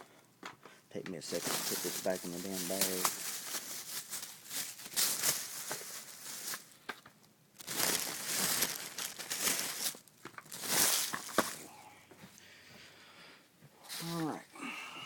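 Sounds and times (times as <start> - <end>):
bag crinkling and rustling: 1.2 - 6.9, 7.6 - 11.8.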